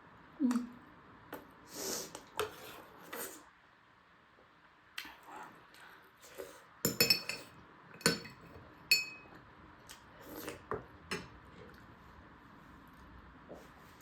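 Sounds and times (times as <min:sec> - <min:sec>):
cutlery clinking against dishes: 0:06.8 - 0:09.4.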